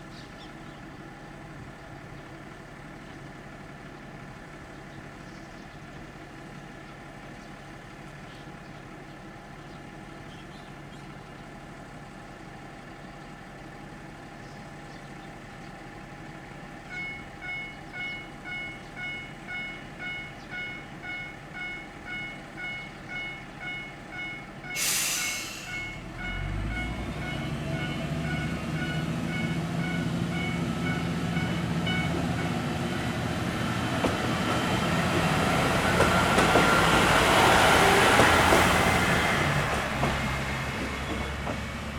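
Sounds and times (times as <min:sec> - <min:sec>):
diesel railcar engine: 0:00.0 - 0:41.9
sharp hiss of air: 0:24.8 - 0:26.0.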